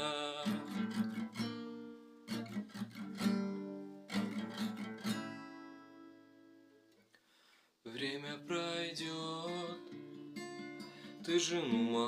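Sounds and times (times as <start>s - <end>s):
person singing: 0.0s - 1.3s, 7.9s - 10.0s, 11.0s - 12.0s
acoustic guitar strummed chords: 0.0s - 6.9s, 7.9s - 12.0s.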